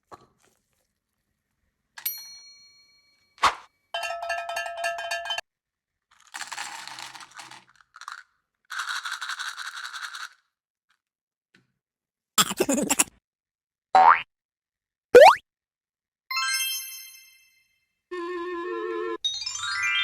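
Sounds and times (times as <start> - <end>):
fast clicking rattles: 6.2 - 10.4.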